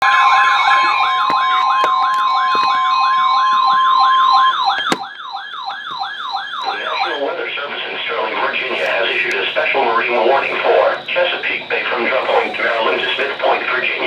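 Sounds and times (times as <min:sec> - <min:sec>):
siren wailing: 0:00.0 - 0:14.0
steady emergency alert tone: 0:00.0 - 0:14.0
person speaking: 0:06.6 - 0:14.0.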